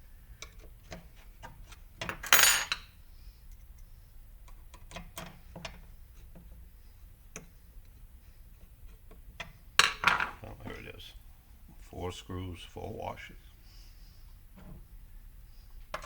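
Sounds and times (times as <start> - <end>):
small metal screws clinking: 2.1 - 2.9.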